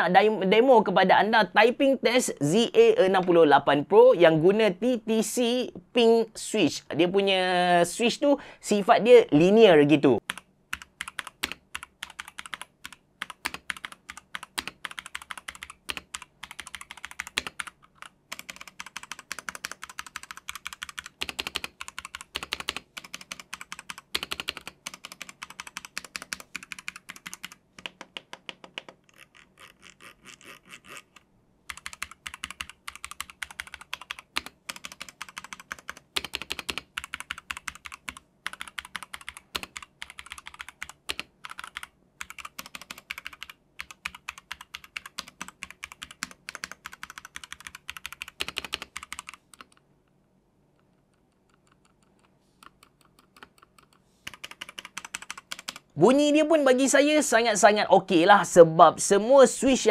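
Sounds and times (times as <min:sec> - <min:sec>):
mechanical keyboard typing: 0:10.2 - 0:49.8, 0:51.1 - 0:55.9.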